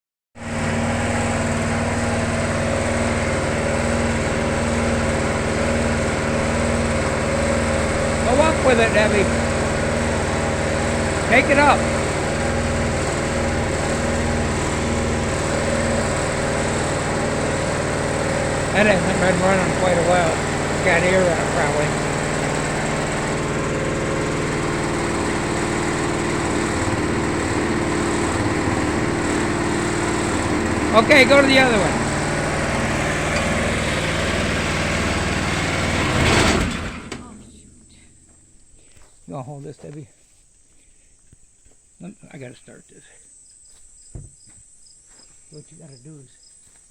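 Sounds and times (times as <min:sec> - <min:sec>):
motor humming with low pulsing: 0:00.4 - 0:39.3.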